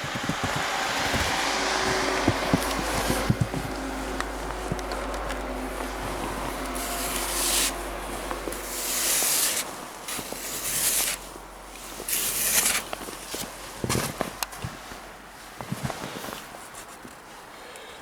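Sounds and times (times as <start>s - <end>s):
low steady rumble: 0.0s - 12.2s
wet snow crunching and scraping: 0.0s - 17.4s.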